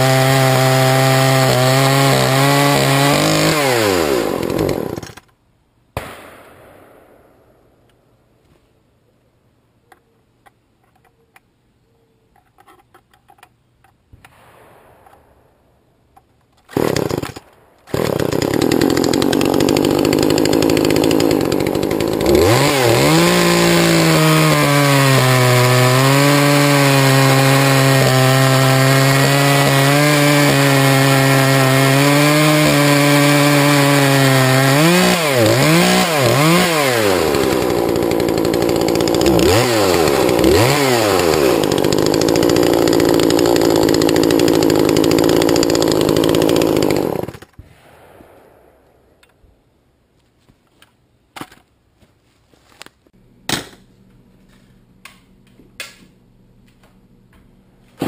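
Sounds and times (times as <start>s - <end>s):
chainsaw idling and revving: 0.0s - 5.2s, 16.7s - 47.4s.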